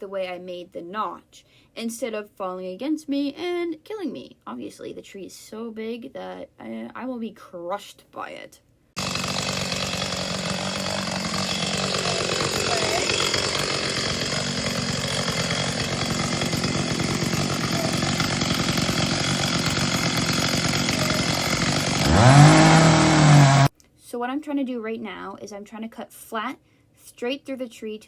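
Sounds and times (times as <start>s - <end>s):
chainsaw cutting wood: 9.0s - 23.7s.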